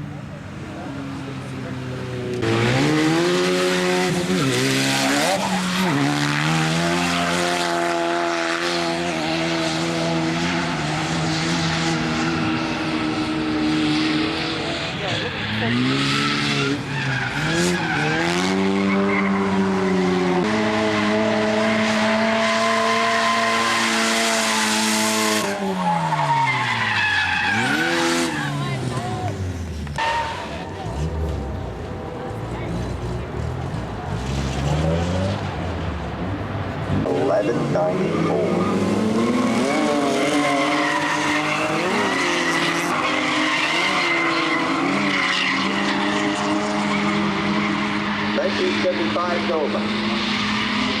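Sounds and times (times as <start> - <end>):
race car engine at full throttle: 0.0 - 51.0
tyres squealing: 25.5 - 35.6.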